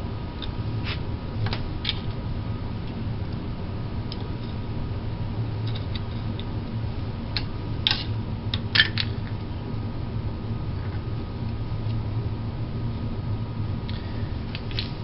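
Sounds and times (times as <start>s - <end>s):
steady low hum: 0.0s - 15.0s
clicks and scrapes of parts: 7.4s - 9.4s, 13.9s - 15.0s.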